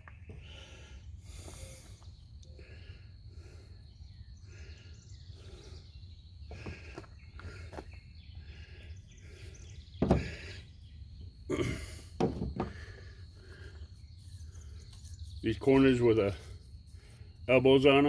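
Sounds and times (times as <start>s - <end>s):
pipe fittings knocking: 10.0s - 10.6s, 12.2s - 13.0s.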